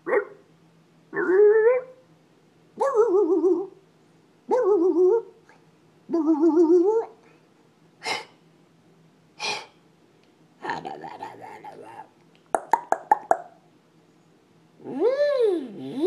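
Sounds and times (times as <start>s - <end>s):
dog howling moans: 1.2s - 2.0s, 14.8s - 16.0s.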